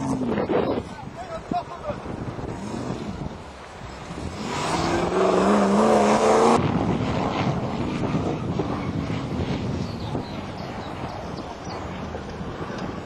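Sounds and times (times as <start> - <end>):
rough noisy engine: 0.0 - 13.0
wind on microphone: 0.0 - 13.0
engine revving hard: 4.2 - 7.3.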